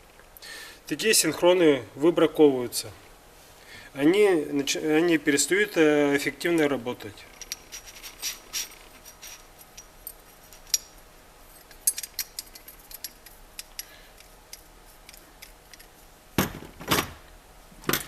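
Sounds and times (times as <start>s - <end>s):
metal parts rubbing: 7.2s - 15.9s.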